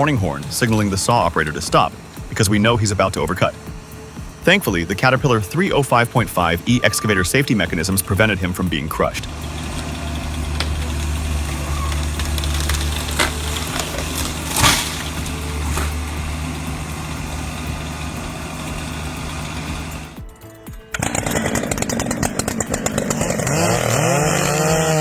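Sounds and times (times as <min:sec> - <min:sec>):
chainsaw running: 0:00.0 - 0:25.0
excavator diesel engine: 0:00.0 - 0:25.0
sharp cracks: 0:07.4 - 0:20.2.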